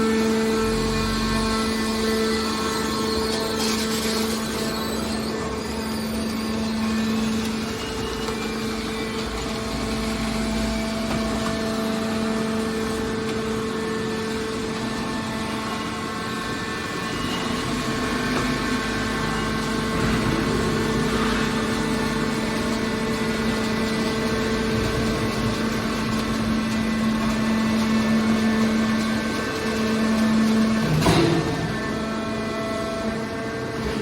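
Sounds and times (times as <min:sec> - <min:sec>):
hydraulic baler humming: 0:00.0 - 0:34.0.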